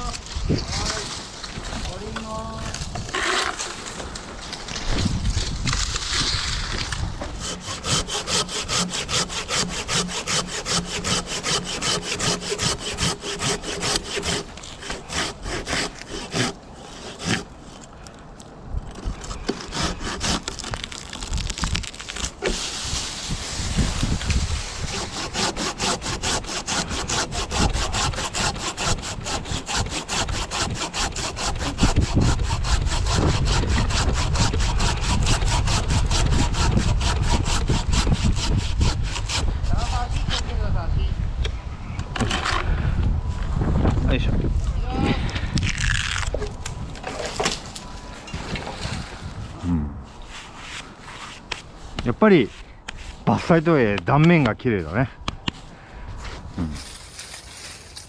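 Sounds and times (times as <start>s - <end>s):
hand saw cutting wood: 0.0s - 4.0s, 5.7s - 18.0s, 19.0s - 40.0s, 56.2s - 58.0s.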